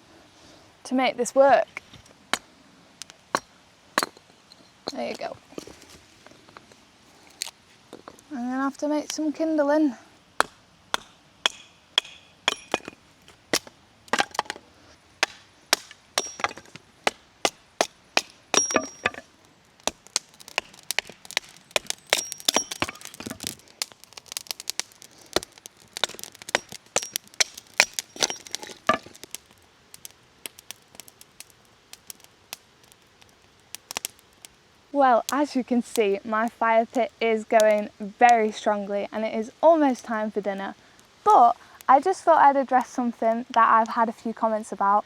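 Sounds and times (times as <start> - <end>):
axe chopping wood: 10.4 - 14.6, 15.2 - 23.6, 24.4 - 29.2
wood cracking and snapping: 10.4 - 14.6, 15.2 - 34.5.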